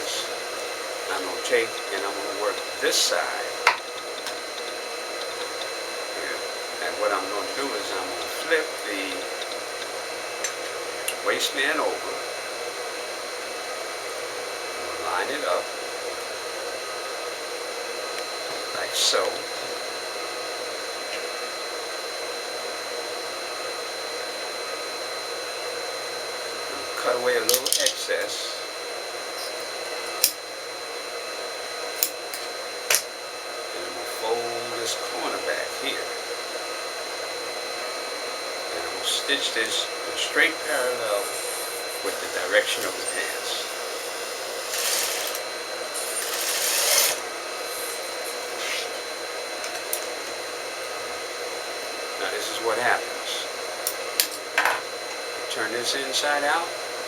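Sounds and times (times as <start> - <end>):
sewing machine motor hum: 0.0 - 21.2, 28.6 - 52.2
fan blowing: 0.0 - 57.0
high whine: 0.0 - 57.0
fabric rasping through sewing machine: 41.1 - 49.0.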